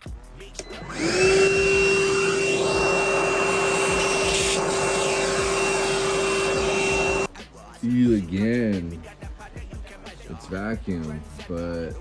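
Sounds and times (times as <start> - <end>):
vacuum cleaner running: 0.6 - 7.3.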